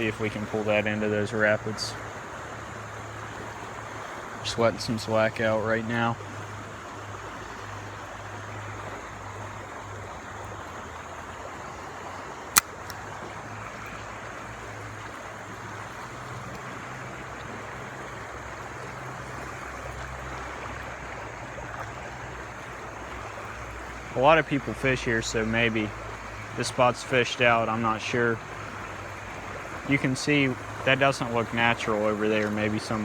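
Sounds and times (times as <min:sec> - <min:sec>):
sharp click: 0:12.6 - 0:13.0.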